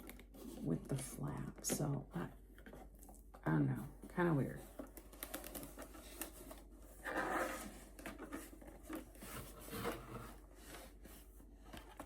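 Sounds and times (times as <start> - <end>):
packaging rustling: 4.6 - 12.0.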